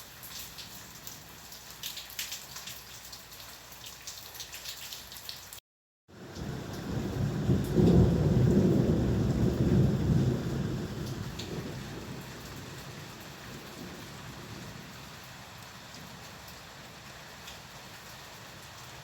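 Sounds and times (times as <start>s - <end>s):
steady rain: 0.0s - 19.0s
thunder rumbling: 6.2s - 15.0s.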